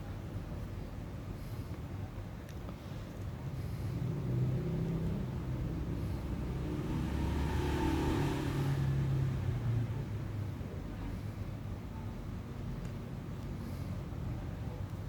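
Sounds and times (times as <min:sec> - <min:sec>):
vehicle engine humming: 0:03.2 - 0:11.6.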